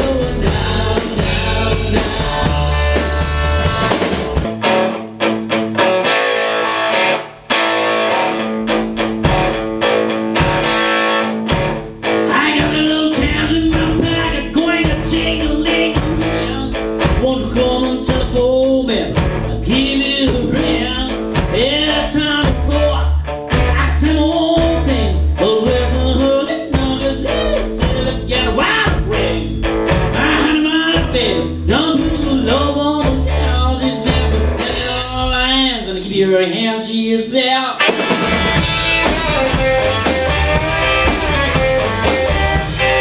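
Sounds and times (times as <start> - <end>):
deep bass line: 0.0 - 4.5, 11.6 - 36.0, 38.2 - 43.0
guitar with bent notes: 0.0 - 36.2, 37.7 - 43.0.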